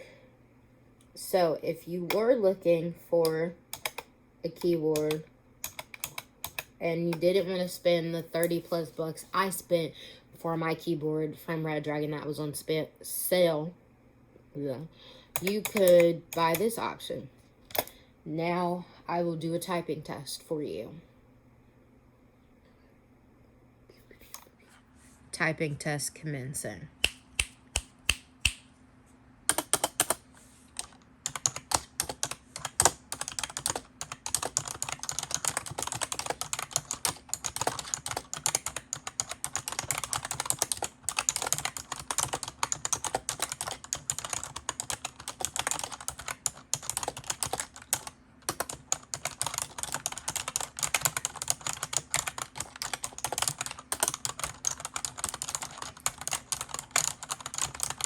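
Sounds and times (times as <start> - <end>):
fast typing on a keyboard: 3.2 - 7.3, 15.4 - 16.6, 29.5 - 30.2, 30.8 - 58.0.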